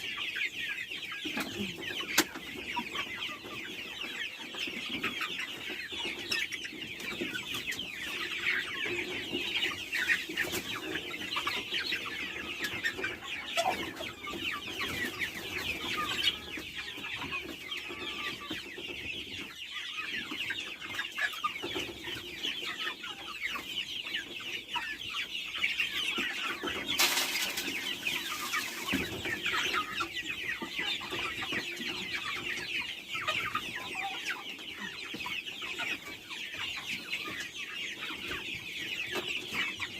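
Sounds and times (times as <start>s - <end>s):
chickens clucking and calling: 0.0s - 39.9s
rustling noise: 26.9s - 29.8s.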